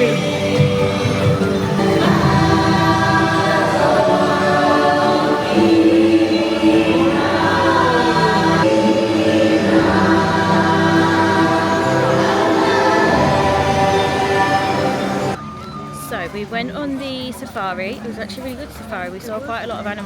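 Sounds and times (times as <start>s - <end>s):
choir singing: 0.0s - 15.4s
sustained accompaniment: 0.0s - 17.6s.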